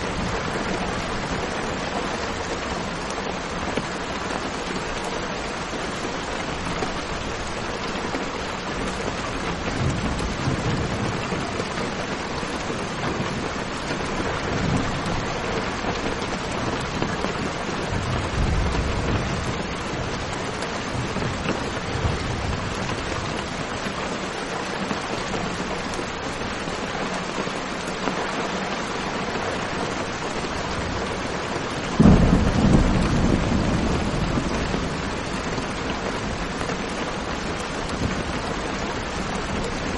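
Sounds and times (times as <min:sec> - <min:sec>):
steady rain falling: 0:00.0 - 0:39.9
thunder rumbling: 0:06.5 - 0:23.9, 0:30.0 - 0:39.8
loud thunderclap: 0:31.9 - 0:35.7.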